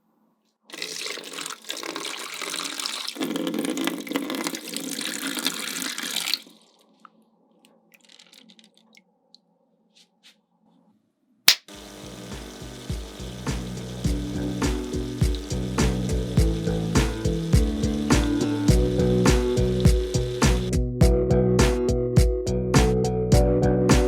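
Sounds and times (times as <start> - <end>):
water pouring: 0.7 - 7.0, 7.9 - 9.0, 11.7 - 20.7
sharp click: 11.5 - 11.7.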